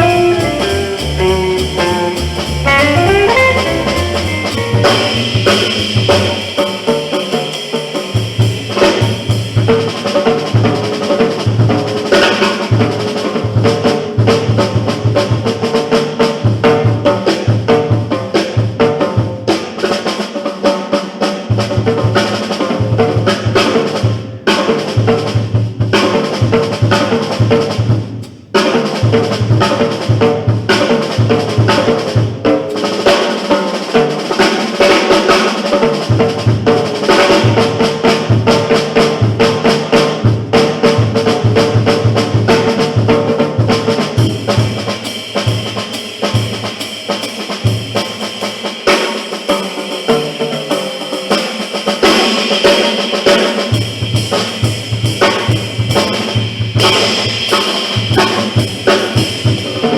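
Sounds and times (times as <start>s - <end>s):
low bass notes: 0.0s - 6.4s
jazz quartet playing: 0.0s - 7.2s
drum kit playing: 0.0s - 59.9s.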